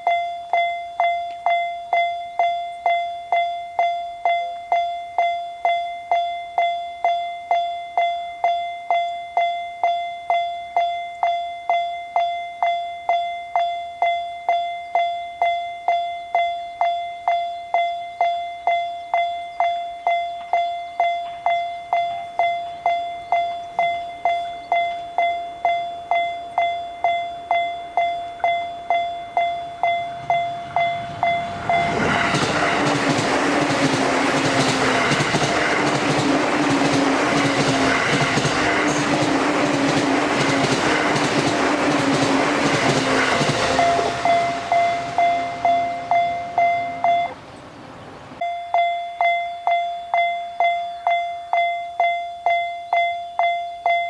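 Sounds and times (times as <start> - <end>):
railroad crossing bell ringing: 0.0 - 54.0
electric train passing: 18.6 - 50.7.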